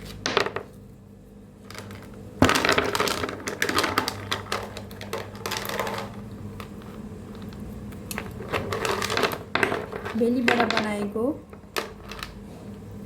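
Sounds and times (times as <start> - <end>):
hard toffee pieces clattering: 1.6 - 11.0.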